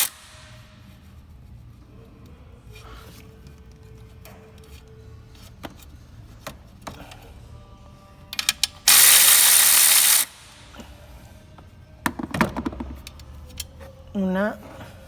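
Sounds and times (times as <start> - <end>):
ratchet clicks: 0.0 - 0.4, 8.4 - 10.5
loud air hiss: 0.0 - 0.5, 8.9 - 10.8.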